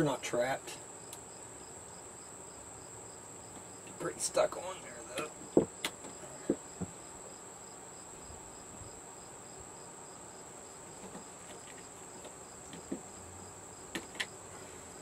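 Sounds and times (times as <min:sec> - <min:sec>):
clicks and taps of parts: 0:13.9 - 0:14.3.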